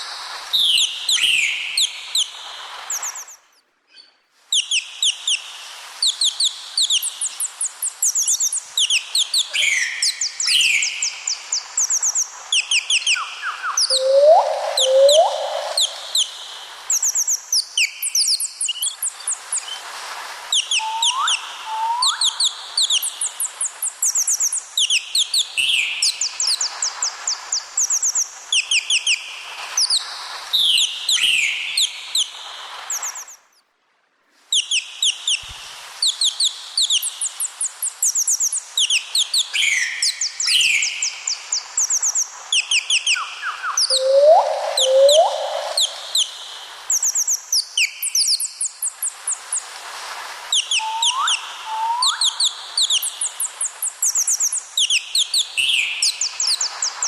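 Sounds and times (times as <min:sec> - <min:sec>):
parrots chirping: 0:12.6 - 0:16.3, 0:42.6 - 0:46.3, 0:50.6 - 0:53.1.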